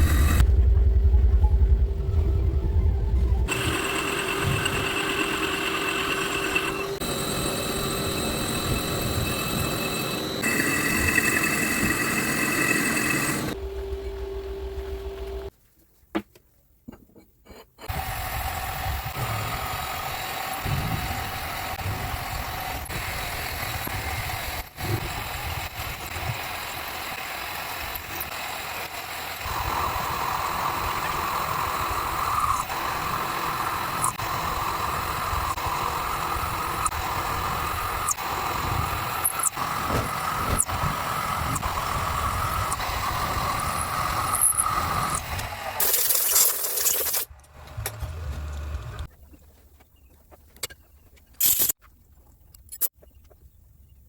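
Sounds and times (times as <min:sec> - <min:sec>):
high steady whine: 0:00.0 - 0:15.5
electric motor running: 0:03.5 - 0:13.6.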